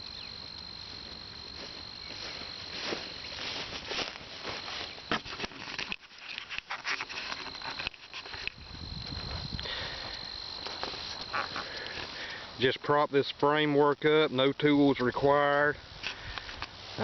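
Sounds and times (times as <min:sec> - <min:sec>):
sticks and brush crackling: 0:00.0 - 0:12.6
high insect drone: 0:00.0 - 0:17.0.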